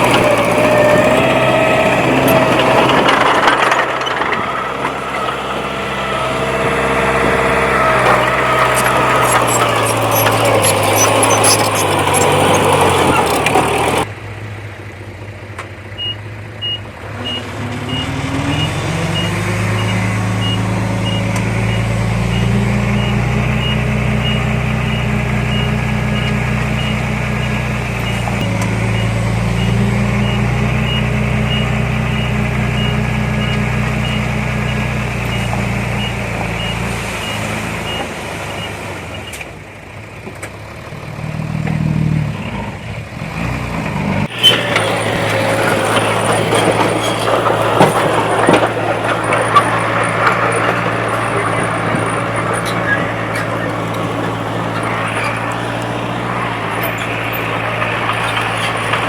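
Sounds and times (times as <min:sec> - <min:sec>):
heavy machine diesel engine: 0:00.0 - 0:59.0
reversing alarm beeping: 0:16.0 - 0:38.7.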